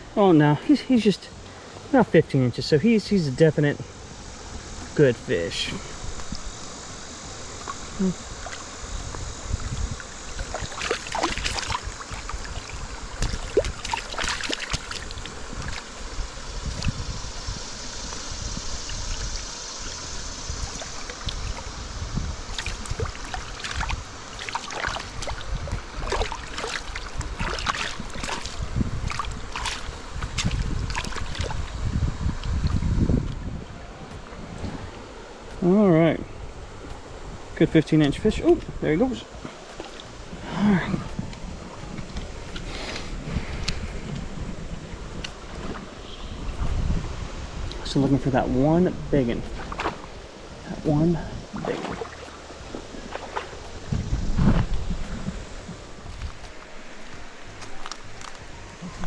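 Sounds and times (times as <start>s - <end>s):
stream water running: 0.0s - 59.0s
water splashes and knocks: 7.5s - 17.4s, 22.5s - 31.7s, 38.0s - 40.2s, 45.1s - 47.0s, 47.7s - 48.4s, 49.2s - 58.4s.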